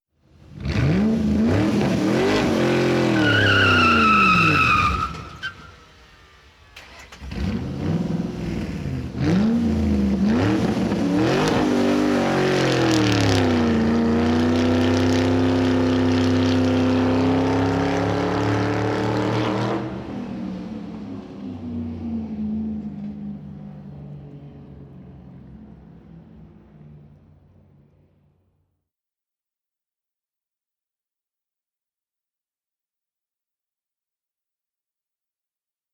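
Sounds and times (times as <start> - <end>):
car engine revving: 0.4 - 25.8
tyre squeal: 2.4 - 6.0.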